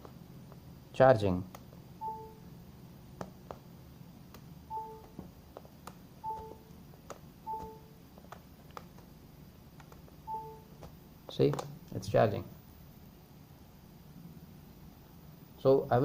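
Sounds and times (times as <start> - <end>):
phone charging chime: 2.0 - 2.4, 4.7 - 5.1, 6.2 - 6.6, 7.5 - 7.9, 10.3 - 10.7.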